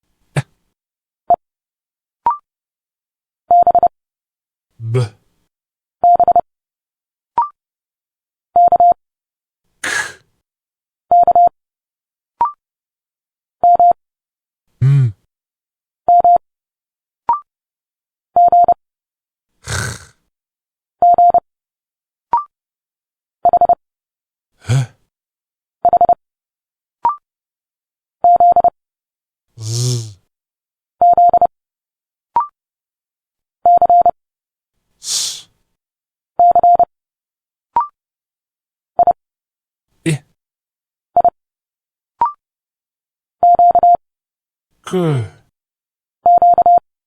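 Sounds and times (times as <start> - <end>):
person speaking letters: 29.6 - 30.2.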